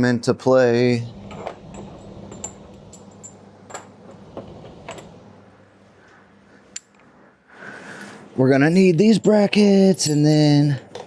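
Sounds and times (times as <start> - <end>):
faint steady hum: 0.0 - 11.0
metal hardware clinking: 1.1 - 5.2, 6.7 - 7.1, 10.0 - 10.6.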